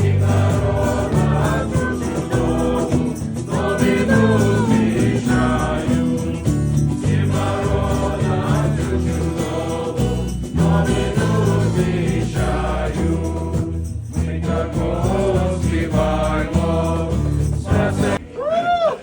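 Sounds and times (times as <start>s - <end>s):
low instrumental accompaniment: 0.0s - 18.2s
youth choir singing a carol: 0.0s - 18.3s.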